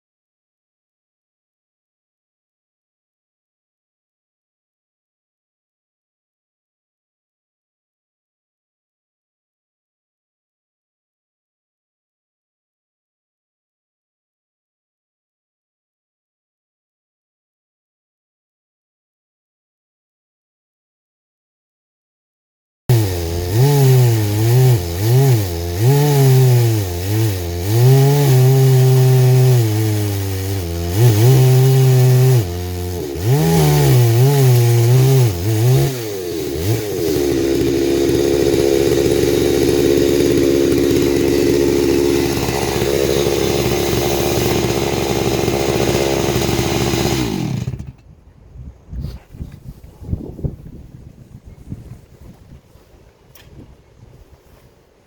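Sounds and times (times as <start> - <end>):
chainsaw ripping a log: 22.9 - 48.1.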